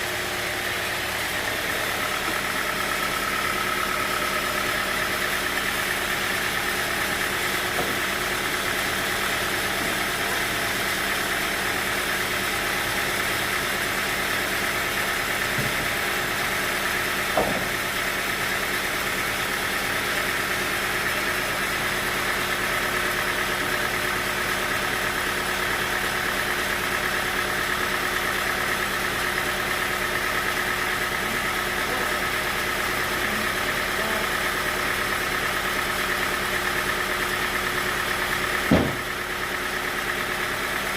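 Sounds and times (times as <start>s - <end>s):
sawmill machinery running: 0.0s - 40.9s
brief knock: 38.7s - 39.0s.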